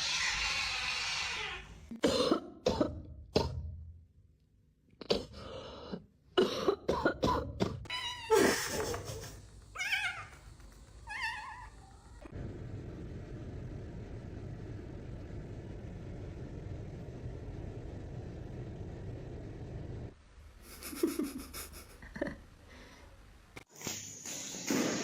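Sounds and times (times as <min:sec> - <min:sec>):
cat meowing: 0:00.0 - 0:01.7, 0:09.8 - 0:10.4, 0:11.0 - 0:12.1.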